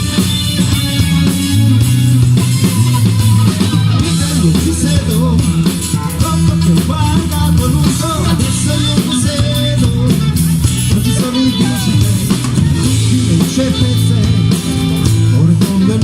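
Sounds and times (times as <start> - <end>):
rock band playing: 0.0 - 16.0.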